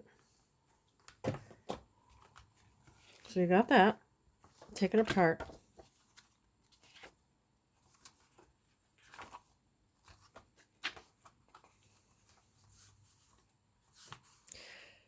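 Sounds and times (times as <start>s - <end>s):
paper rustling: 4.4s - 14.4s.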